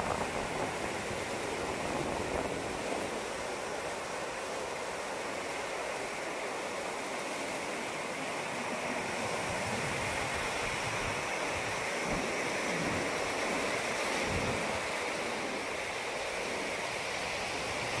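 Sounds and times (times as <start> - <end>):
wind rumble on microphone: 0.0 - 3.3, 8.9 - 15.8
ocean surf washing ashore: 0.0 - 18.0.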